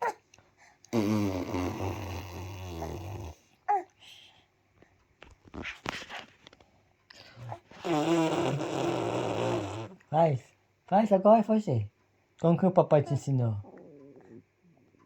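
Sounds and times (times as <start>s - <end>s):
person making rasping vocal noise: 0.9s - 3.4s, 7.8s - 10.0s.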